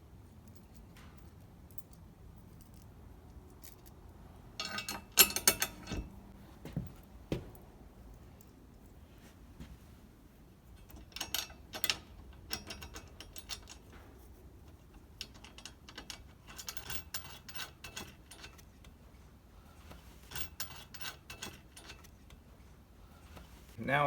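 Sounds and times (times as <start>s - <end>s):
metal hardware clicking: 4.6s - 6.3s.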